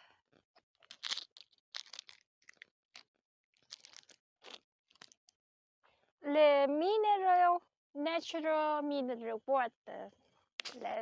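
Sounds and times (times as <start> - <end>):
plastic bottle crinkling: 0.8 - 5.3.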